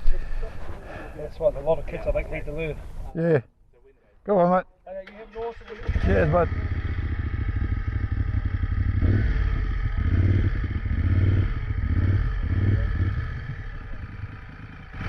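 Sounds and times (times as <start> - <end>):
motorcycle engine revving: 5.6 - 15.0.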